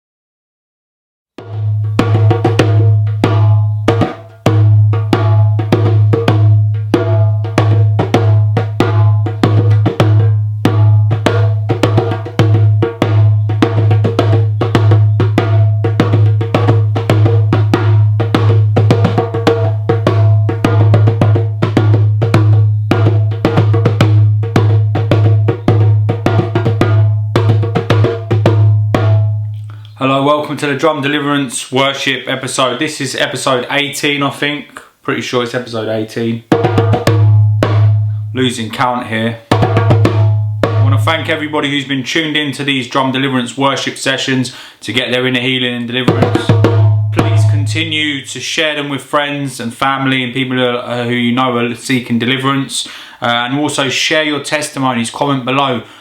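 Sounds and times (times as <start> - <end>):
fast dense drumming: 1.4 - 29.4, 36.4 - 38.1, 39.5 - 41.5, 45.9 - 48.1.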